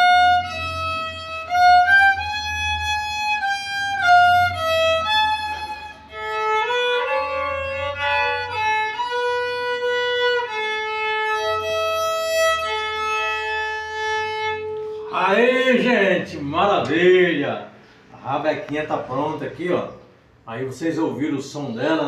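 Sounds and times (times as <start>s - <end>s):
bowed fiddle melody: 0.0s - 16.7s.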